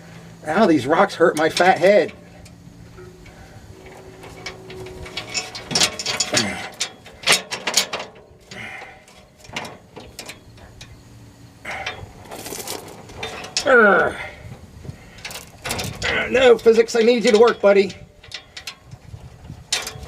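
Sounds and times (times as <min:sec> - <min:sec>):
chain links clinking and rattling: 0:01.8 - 0:10.9, 0:11.7 - 0:14.0.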